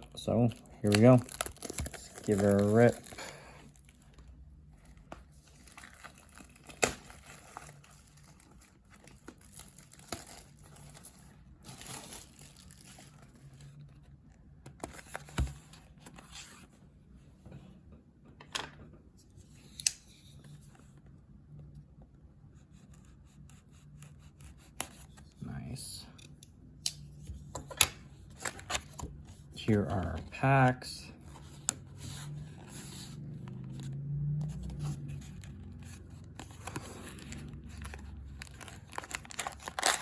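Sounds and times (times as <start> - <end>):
plastic shrink wrap tearing: 0.5 - 4.1, 5.5 - 11.0, 11.7 - 13.2, 36.6 - 40.0.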